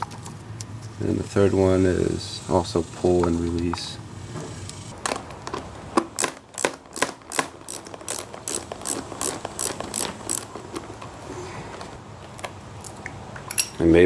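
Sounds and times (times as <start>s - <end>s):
hand ratchet clicking: 6.2s - 10.6s.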